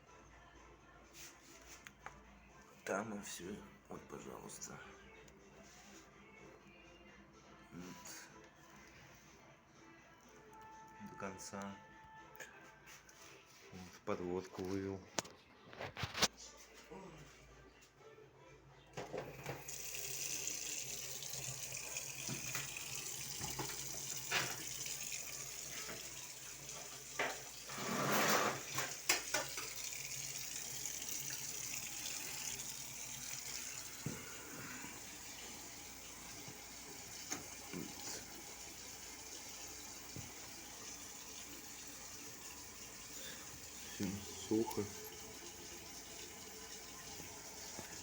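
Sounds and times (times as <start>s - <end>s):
water running from a tap: 19.2s - 48.0s.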